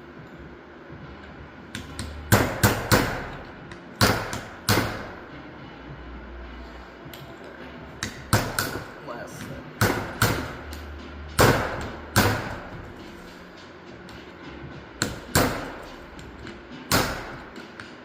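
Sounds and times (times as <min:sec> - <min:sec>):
hammer striking metal: 0:01.7 - 0:05.4, 0:08.0 - 0:18.0.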